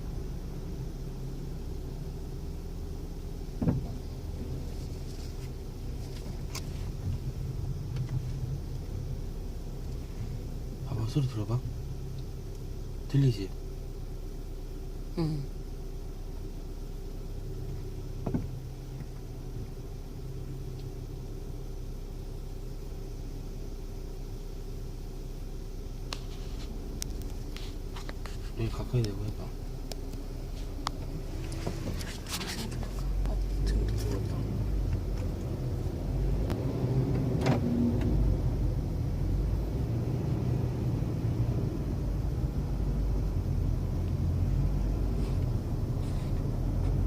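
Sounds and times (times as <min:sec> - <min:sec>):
car engine humming: 0:00.0 - 0:47.0
faint ticks: 0:20.7 - 0:21.0.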